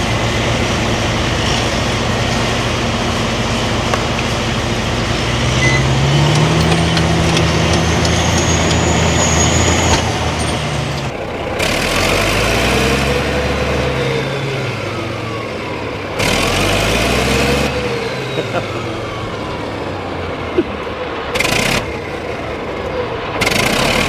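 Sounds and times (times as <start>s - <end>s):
bulldozer diesel engine under load: 0.0s - 22.8s.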